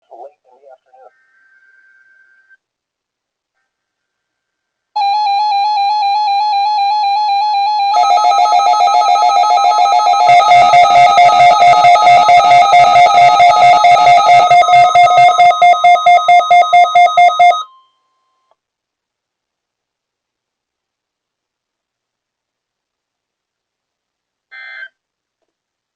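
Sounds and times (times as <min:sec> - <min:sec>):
electronic ringtone tune: 0:05.0 - 0:18.0.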